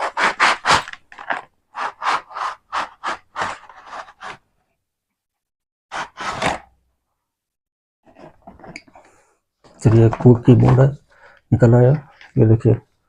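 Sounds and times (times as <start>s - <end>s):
cardboard box scraping and rustling: 0.0s - 4.4s, 6.0s - 6.8s.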